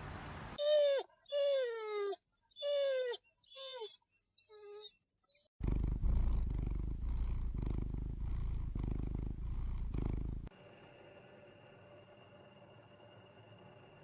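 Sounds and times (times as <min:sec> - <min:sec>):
cat purring: 0:05.6 - 0:10.5
faint hum with high tone: 0:08.6 - 0:14.0.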